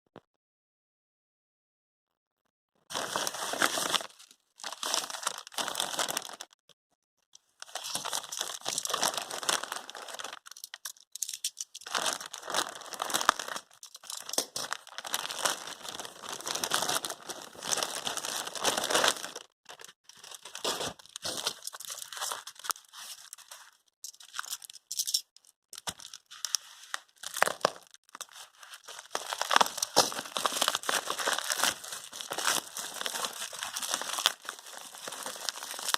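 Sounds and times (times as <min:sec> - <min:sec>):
packaging crinkling and tearing: 0:02.9 - 0:06.5, 0:07.6 - 0:24.9, 0:25.7 - 0:35.9.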